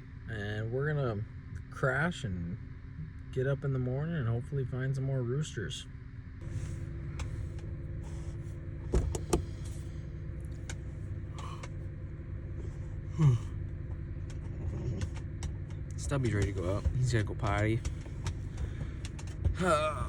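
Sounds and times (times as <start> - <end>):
car cabin hum: 6.4 - 20.0.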